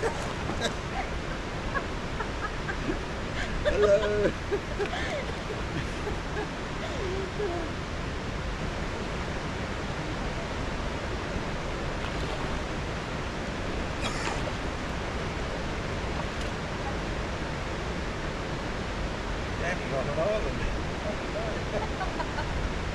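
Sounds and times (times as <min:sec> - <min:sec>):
water flowing over rocks: 0:00.0 - 0:22.0.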